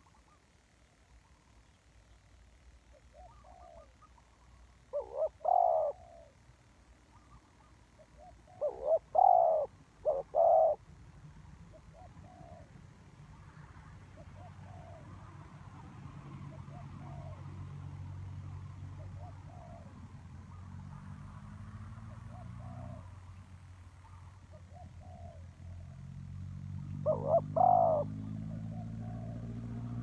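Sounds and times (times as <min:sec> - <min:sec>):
dove cooing: 0:00.0 - 0:00.5, 0:02.9 - 0:06.5, 0:07.1 - 0:10.8, 0:11.6 - 0:12.8, 0:14.1 - 0:15.4, 0:16.4 - 0:17.6, 0:19.0 - 0:20.6, 0:22.0 - 0:23.2, 0:24.0 - 0:26.0, 0:26.9 - 0:30.0.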